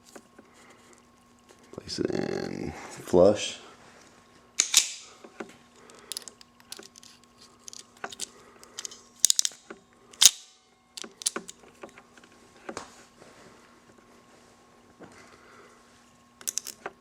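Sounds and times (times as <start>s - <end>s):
compression tool clicks and snaps: 7.7s - 9.6s, 11.0s - 11.6s.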